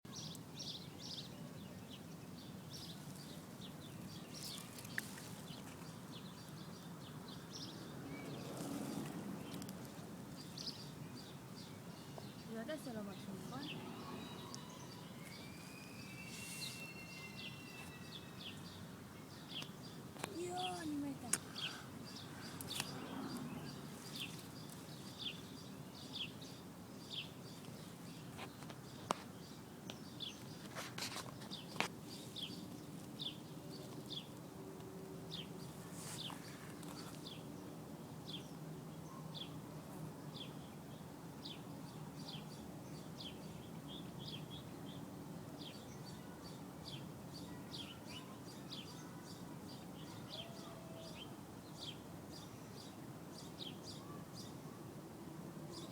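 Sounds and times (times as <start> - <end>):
bird chirping: 9.4 - 34.4.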